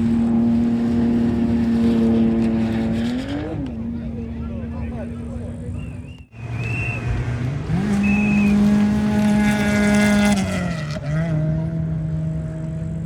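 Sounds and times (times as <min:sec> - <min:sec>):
rally car engine at high revs: 0:00.0 - 0:05.6, 0:06.4 - 0:13.0.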